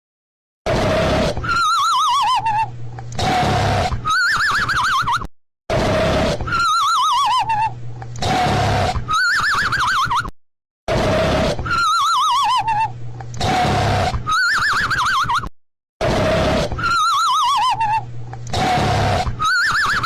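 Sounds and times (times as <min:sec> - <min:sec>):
cartoon snoring: 0:00.7 - 0:01.7, 0:03.2 - 0:04.1, 0:05.7 - 0:06.7, 0:08.2 - 0:09.1, 0:10.9 - 0:12.0, 0:13.4 - 0:14.5, 0:16.0 - 0:17.0, 0:18.5 - 0:19.7
warbling whistle: 0:16.8 - 0:18.0.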